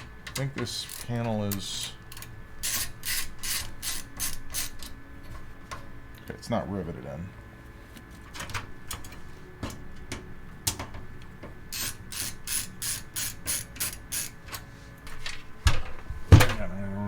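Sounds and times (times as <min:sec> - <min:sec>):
ratcheting screwdriver clicking: 0:00.8 - 0:05.0, 0:11.7 - 0:14.6.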